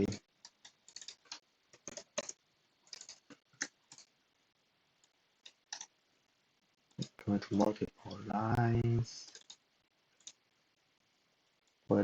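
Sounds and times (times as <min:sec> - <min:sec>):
keyboard and mouse clicks: 0:00.0 - 0:04.1, 0:05.0 - 0:05.9, 0:09.2 - 0:09.6.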